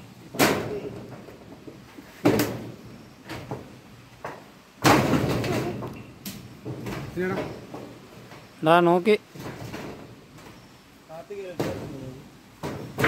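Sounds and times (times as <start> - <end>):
knocks on metal roofing sheets: 0.3 - 6.0, 6.6 - 8.0, 11.4 - 13.0.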